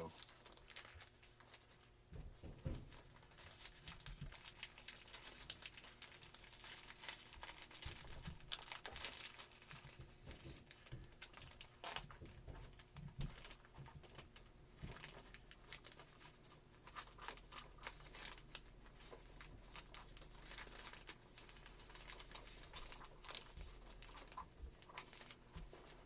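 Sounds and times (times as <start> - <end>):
packaging crinkling: 0.0 - 1.9, 2.7 - 26.0
packaging tearing: 19.8 - 25.4.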